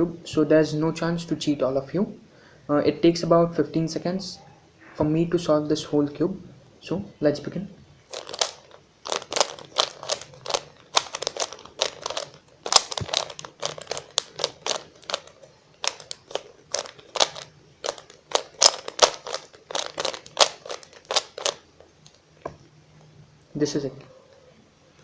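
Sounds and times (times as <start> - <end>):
puzzle cube clicking and clacking: 8.1 - 22.2.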